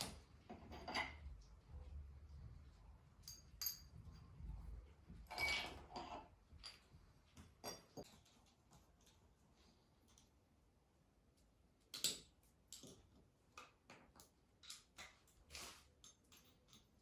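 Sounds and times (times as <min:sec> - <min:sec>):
metal tools clinking: 0:03.2 - 0:04.2.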